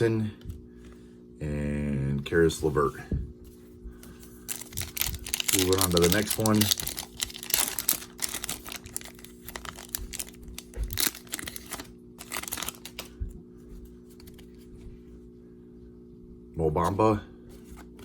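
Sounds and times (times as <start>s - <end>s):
foil wrapper tearing and crinkling: 4.5s - 13.2s.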